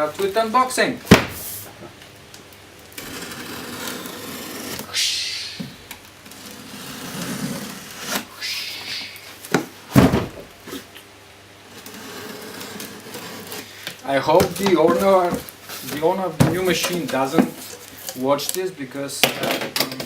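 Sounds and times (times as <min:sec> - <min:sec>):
knocks on cardboard box: 0:01.1 - 0:01.4
cardboard box scraping and rubbing: 0:03.0 - 0:04.9, 0:06.3 - 0:08.3, 0:11.7 - 0:13.8
cardboard tearing: 0:03.0 - 0:04.9, 0:06.3 - 0:08.3, 0:11.7 - 0:17.6.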